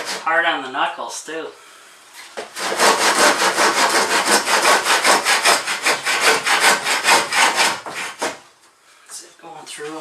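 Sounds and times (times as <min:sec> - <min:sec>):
handsaw cutting wood: 0:00.0 - 0:00.4, 0:02.5 - 0:08.4.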